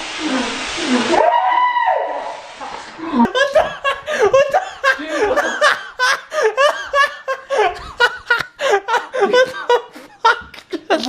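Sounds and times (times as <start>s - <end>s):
people laughing: 3.1s - 11.0s.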